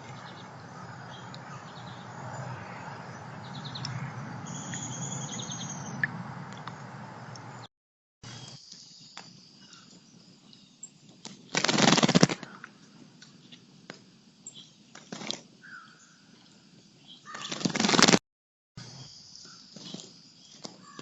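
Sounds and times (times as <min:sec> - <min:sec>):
faint bird chirps: 0:00.0 - 0:07.7, 0:18.8 - 0:21.0
bird wings flapping: 0:11.2 - 0:12.6, 0:14.9 - 0:15.5, 0:17.3 - 0:18.2.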